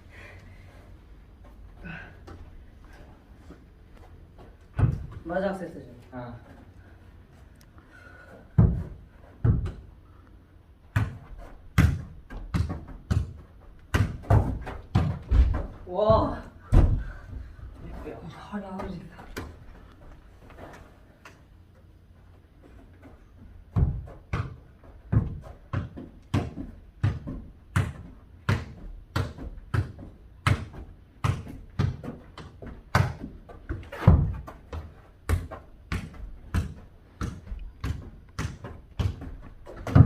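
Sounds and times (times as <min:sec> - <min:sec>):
ball being kicked thuds: 0:04.7 - 0:05.2, 0:08.5 - 0:09.9, 0:10.9 - 0:17.2, 0:23.7 - 0:40.0.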